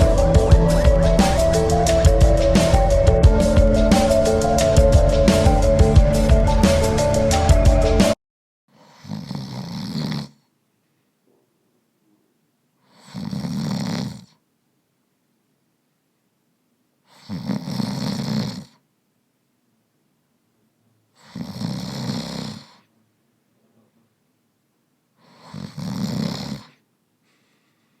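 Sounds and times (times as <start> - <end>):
rasping snores: 8.8 - 10.4, 12.9 - 14.4, 17.1 - 18.8, 21.2 - 22.9, 25.2 - 26.8.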